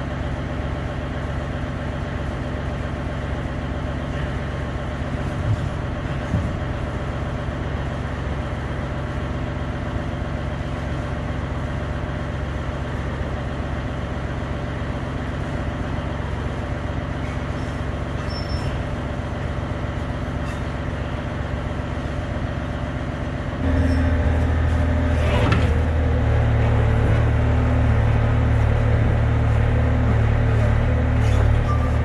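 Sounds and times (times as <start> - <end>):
diesel engine running: 0.0 - 32.0
scrape or clank: 24.7 - 25.8.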